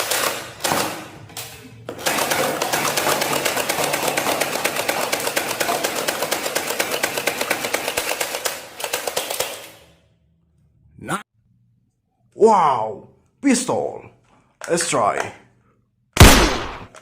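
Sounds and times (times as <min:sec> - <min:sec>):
toy machine gun firing: 0:02.0 - 0:09.9.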